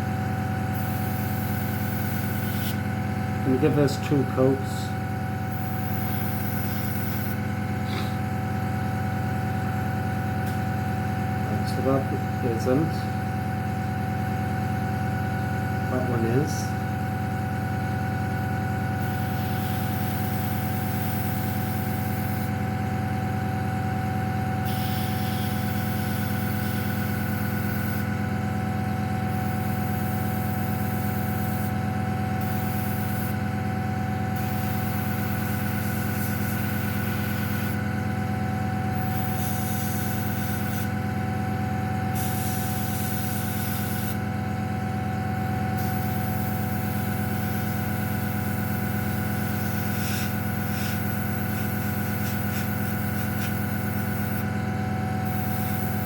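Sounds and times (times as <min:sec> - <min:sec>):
steady motor hum: 0:00.0 - 0:56.0
airbrush air hiss: 0:00.7 - 0:02.8, 0:05.5 - 0:08.2, 0:19.0 - 0:22.5, 0:24.6 - 0:28.1, 0:29.3 - 0:31.8, 0:32.4 - 0:33.4, 0:34.4 - 0:37.8, 0:38.9 - 0:40.9, 0:42.1 - 0:44.2, 0:45.8 - 0:54.5, 0:55.2 - 0:56.0.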